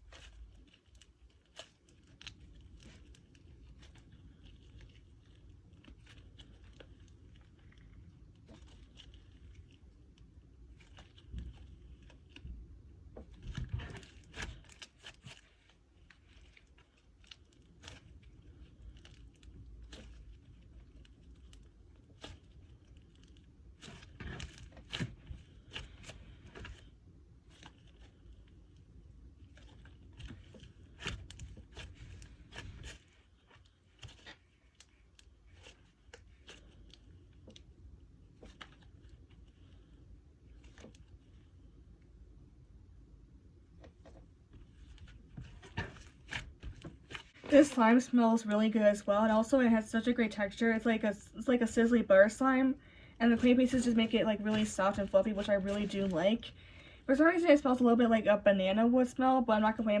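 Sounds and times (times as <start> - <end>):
sticky crackles and clicks: 0.0 - 41.4, 51.4 - 57.7.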